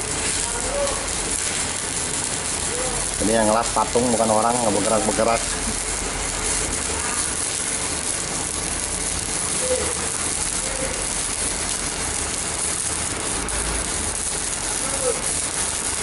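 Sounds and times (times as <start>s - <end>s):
welding arc crackling sizzle: 0.0s - 16.0s.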